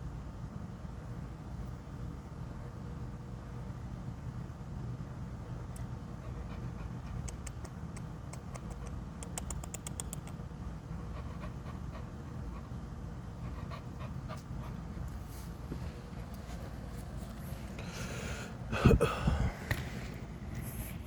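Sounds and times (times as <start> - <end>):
steady low rumble: 0.0 - 21.0
dog panting: 6.1 - 16.4.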